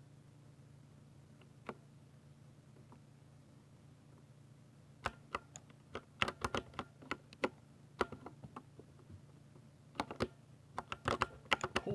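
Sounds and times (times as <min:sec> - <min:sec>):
mechanical keyboard typing: 0:05.0 - 0:08.4, 0:10.0 - 0:11.9.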